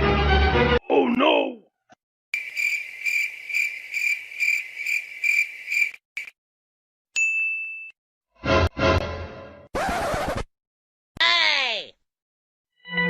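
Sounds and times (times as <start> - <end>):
cricket chirping: 2.4 - 6.3.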